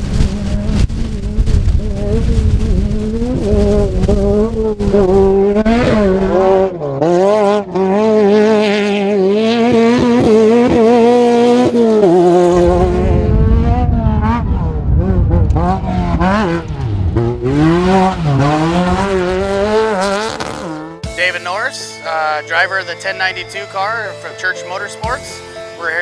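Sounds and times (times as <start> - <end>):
low rumble from the ground: 0.0 - 6.7, 12.3 - 19.9
race car engine revving: 0.0 - 21.2.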